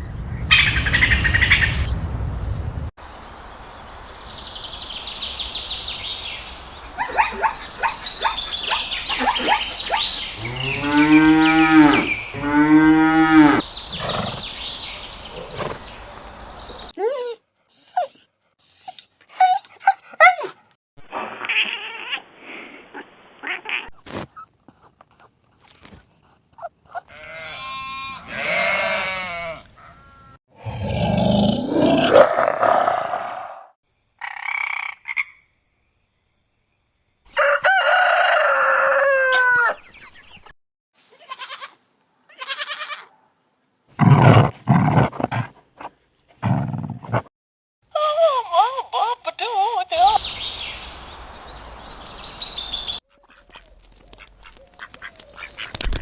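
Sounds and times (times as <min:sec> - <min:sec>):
animal calls: 0:06.9 - 0:19.7, 0:44.0 - 0:47.3
cattle mooing: 0:10.4 - 0:14.4.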